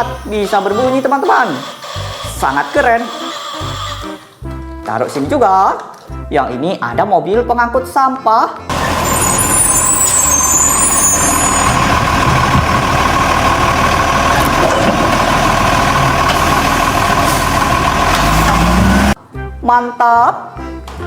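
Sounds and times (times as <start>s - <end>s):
constant high tone: 0.0s - 4.3s, 8.9s - 12.1s
garbage truck engine running: 0.0s - 4.4s, 8.7s - 19.2s.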